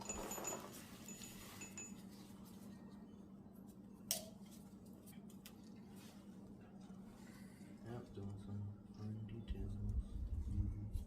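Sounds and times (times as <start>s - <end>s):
metallic clinks of tools: 0.0s - 2.1s
steady low hum: 0.0s - 11.0s.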